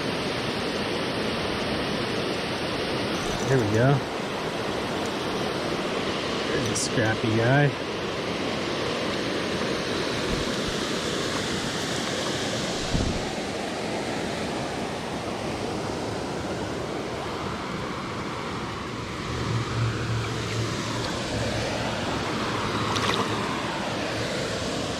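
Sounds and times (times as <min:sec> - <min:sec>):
stream water running over rocks: 0:00.0 - 0:13.7, 0:19.0 - 0:24.9.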